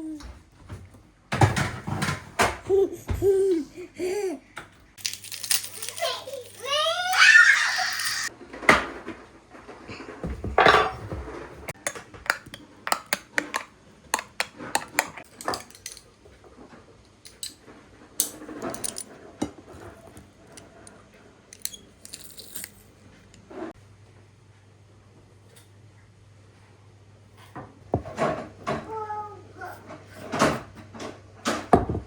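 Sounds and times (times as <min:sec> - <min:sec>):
dishes and cutlery clinking: 0:10.3 - 0:11.2.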